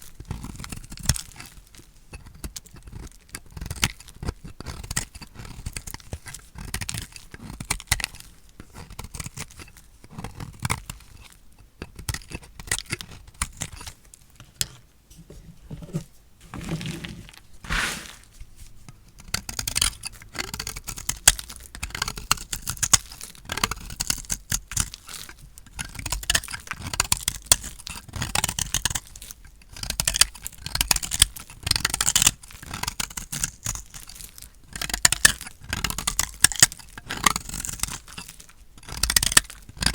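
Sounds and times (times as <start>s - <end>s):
knife crunching through soap: 16.4s - 18.3s.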